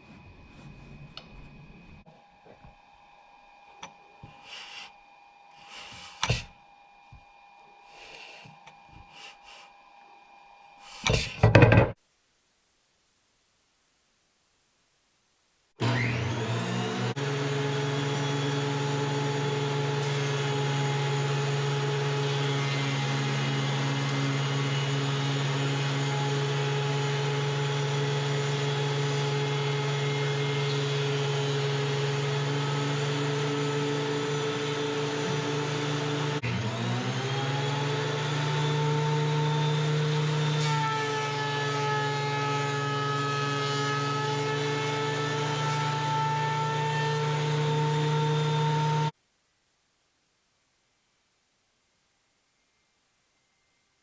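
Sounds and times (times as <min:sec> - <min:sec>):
planer motor whining: 0:15.8 - 0:49.1.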